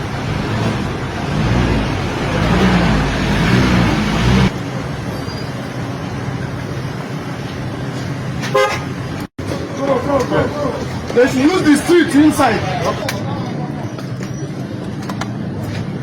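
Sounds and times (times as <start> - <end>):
vehicle engine running: 0.0 - 8.4
traffic noise: 0.0 - 16.0.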